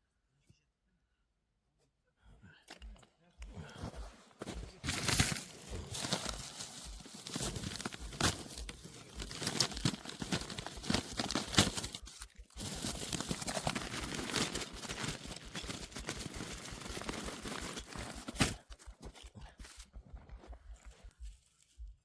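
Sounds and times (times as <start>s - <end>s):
snow crunching and scraping: 3.7s - 21.3s.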